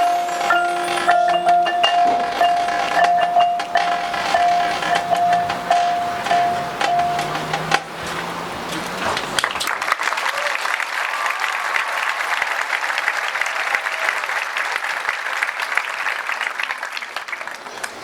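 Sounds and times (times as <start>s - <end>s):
crowd applauding: 0.0s - 7.6s, 8.8s - 18.0s.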